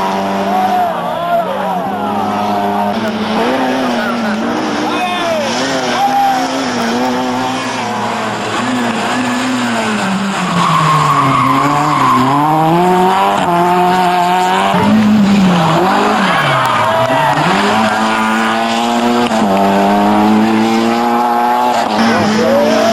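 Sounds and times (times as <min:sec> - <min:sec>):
car engine driven hard: 0:00.0 - 0:22.9.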